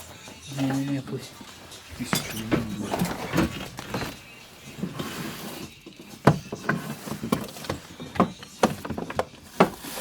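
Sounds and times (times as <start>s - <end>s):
objects knocking and clattering: 2.0s - 4.3s, 5.8s - 10.0s.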